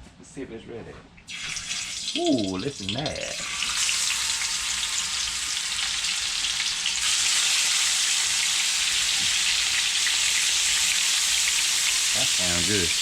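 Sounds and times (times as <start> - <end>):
fish fillets sizzling in a pan: 3.4 - 13.0.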